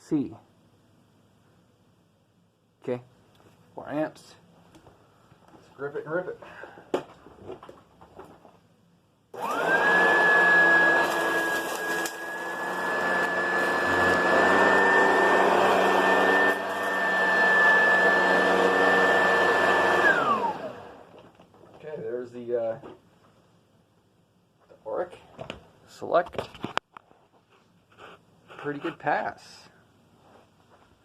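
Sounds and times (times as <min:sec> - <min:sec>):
vacuum cleaner motor whine: 0:09.4 - 0:21.1.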